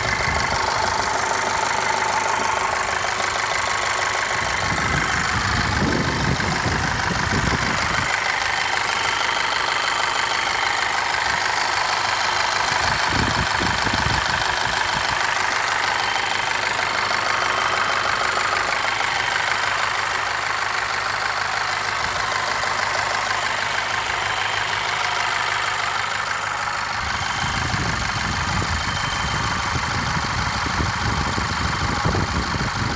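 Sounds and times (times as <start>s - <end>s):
car engine idling: 0.0s - 32.9s
engine knocking: 0.0s - 32.9s.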